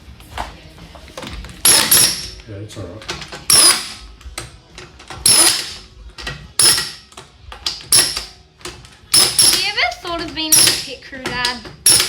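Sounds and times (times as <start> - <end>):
impact wrench rattling whine: 1.6 - 2.4, 3.1 - 12.0.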